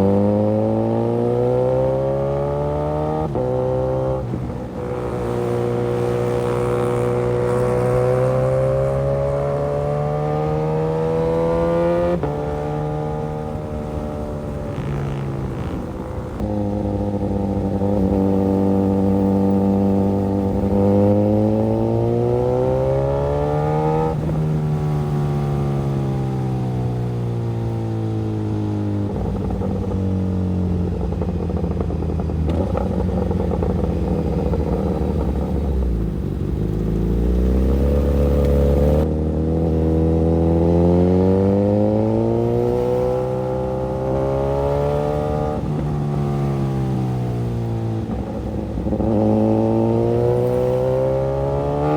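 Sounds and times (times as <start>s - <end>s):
motorcycle engine revving: 0.0s - 51.9s.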